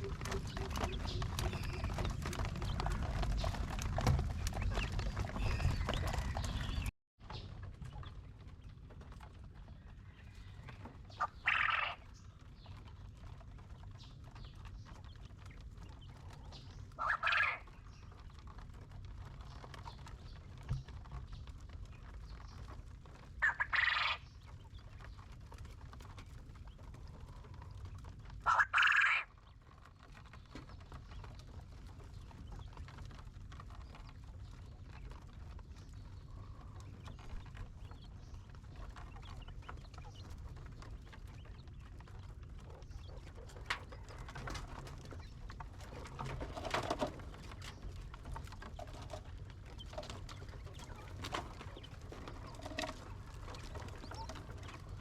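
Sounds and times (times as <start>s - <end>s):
quail calling: 11.1s - 12.0s, 17.0s - 17.7s, 23.4s - 24.3s, 28.4s - 29.3s.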